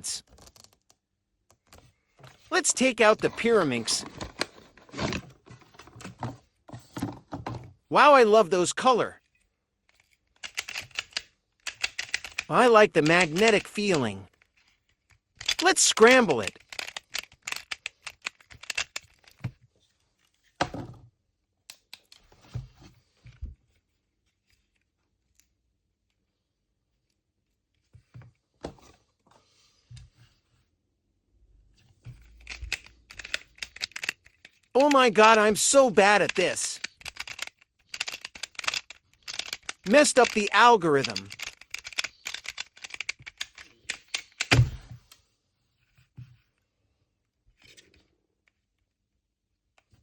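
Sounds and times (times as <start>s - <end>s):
puzzle pieces clicking: 10.4s - 14.2s, 15.4s - 19.4s, 32.3s - 44.5s
heavy thunk: 44.5s - 45.0s.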